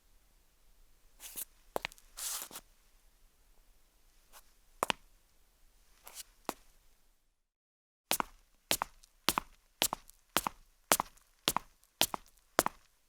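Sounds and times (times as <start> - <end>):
foot scuff: 1.2 - 2.6, 6.0 - 6.6, 8.1 - 12.9
footsteps: 8.1 - 12.8.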